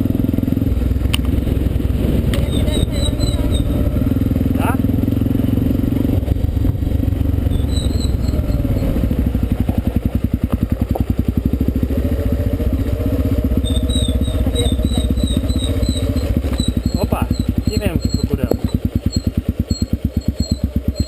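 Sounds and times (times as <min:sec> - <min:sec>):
motorcycle engine running: 0:00.0 - 0:21.0
high chirping: 0:02.4 - 0:04.1, 0:07.4 - 0:09.2, 0:13.5 - 0:21.0.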